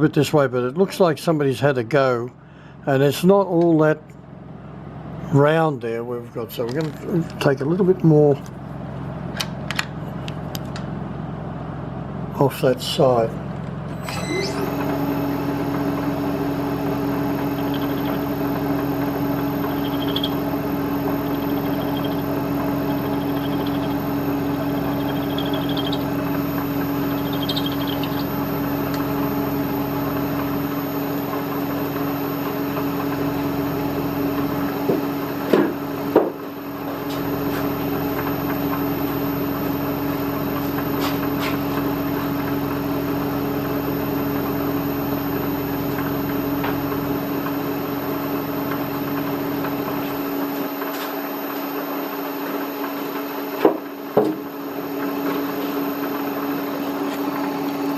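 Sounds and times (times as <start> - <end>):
milling machine humming: 6.3 - 57.9
high squeals of cutting: 13.9 - 15.1, 17.4 - 18.4, 19.4 - 28.6.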